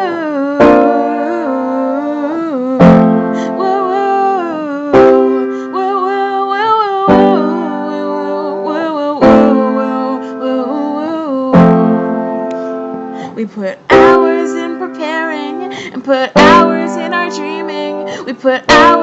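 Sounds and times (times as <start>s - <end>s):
sustained chords: 16.4s - 18.1s.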